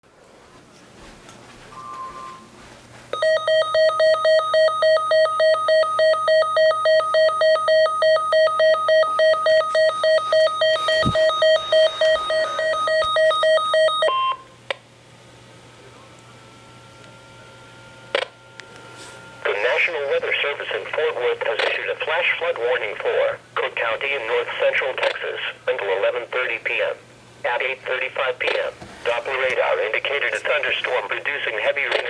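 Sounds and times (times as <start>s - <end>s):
weather radio alarm beeping: 3.2s - 14.5s
steady high tone: 9.3s - 14.2s.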